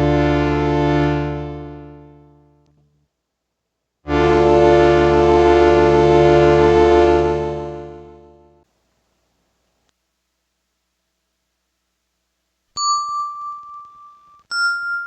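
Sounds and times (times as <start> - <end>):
keyboard chords with delay: 0.0 - 2.6, 4.1 - 8.6.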